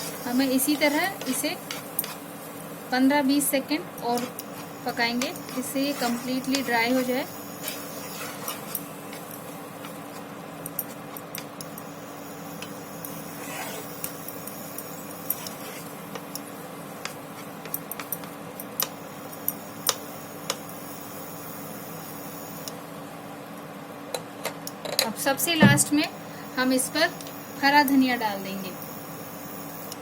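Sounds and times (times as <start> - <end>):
spoon scraping and clicking on pan: 1.0 - 2.2, 4.0 - 11.0.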